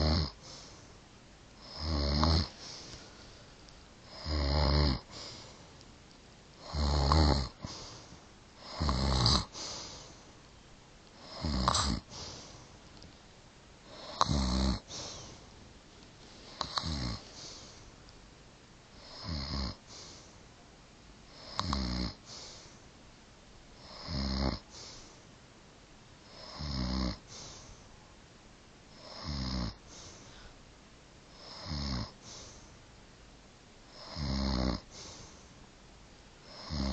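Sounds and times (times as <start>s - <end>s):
woman snoring: 0.0s - 0.4s, 1.6s - 2.6s, 4.0s - 5.3s, 6.6s - 7.7s, 8.6s - 9.8s, 11.2s - 12.3s, 13.9s - 15.4s, 16.6s - 17.6s, 19.0s - 19.8s, 21.4s - 22.3s, 23.8s - 24.7s, 26.3s - 27.2s, 29.0s - 29.8s, 31.4s - 32.2s, 33.9s - 35.1s, 36.5s - 36.9s.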